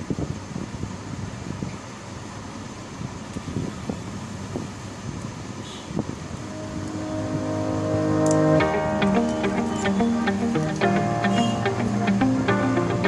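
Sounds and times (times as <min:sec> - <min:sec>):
background music with held notes: 0:06.5 - 0:13.0.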